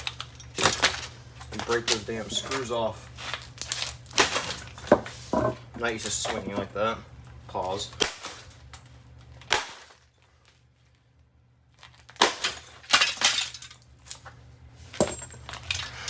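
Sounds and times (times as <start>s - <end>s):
loose parts breaking and clattering: 11.9s - 14.3s, 15.0s - 16.0s.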